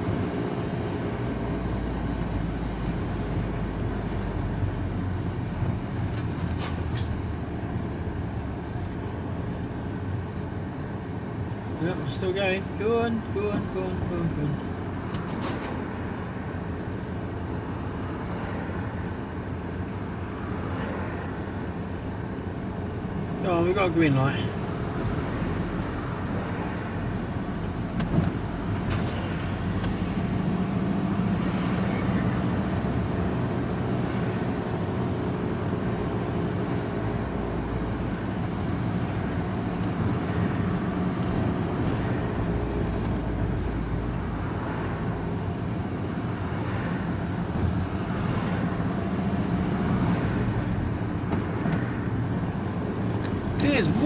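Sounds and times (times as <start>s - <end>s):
road noise: 0.0s - 54.0s
vehicle engine hum: 0.0s - 54.0s.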